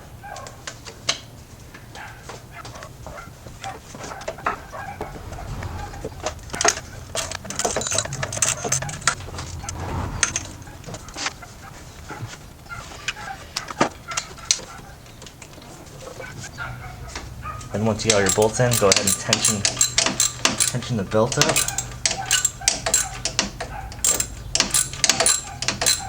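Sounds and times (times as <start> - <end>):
metallic clinks of hand tools: 18.1 - 26.0.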